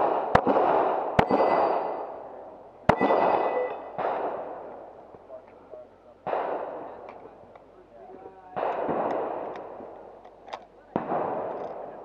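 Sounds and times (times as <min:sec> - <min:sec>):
pistol shots with echo: 0:00.0 - 0:05.0, 0:06.2 - 0:07.1, 0:08.5 - 0:10.1, 0:10.9 - 0:12.0.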